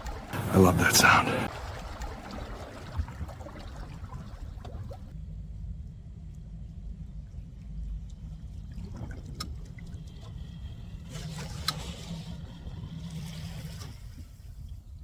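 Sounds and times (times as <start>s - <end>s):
boat motor rumble: 0.0s - 5.1s
water splashing along hull: 0.0s - 5.1s.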